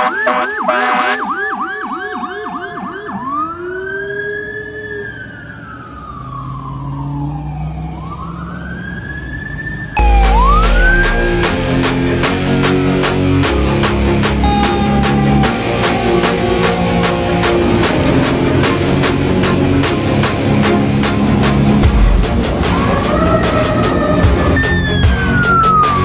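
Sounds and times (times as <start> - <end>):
air horn blast: 0.0 - 1.2, 14.2 - 24.9
fire engine siren: 0.0 - 26.0
loud music: 10.0 - 26.0.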